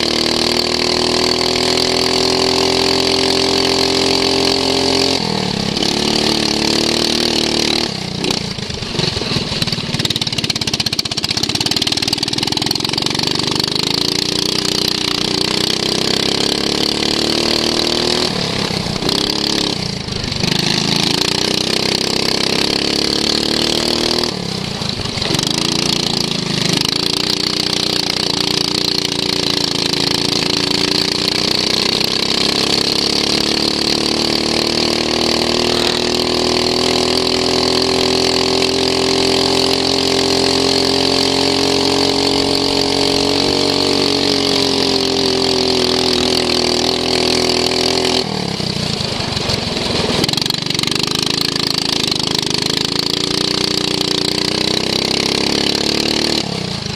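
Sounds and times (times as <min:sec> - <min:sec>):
lawn mower engine revving: 0:00.0 - 0:56.9.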